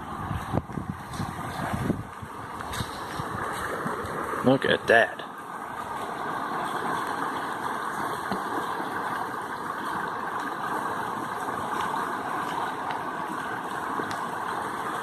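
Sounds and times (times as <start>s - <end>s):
creek water rushing: 0.0s - 15.0s.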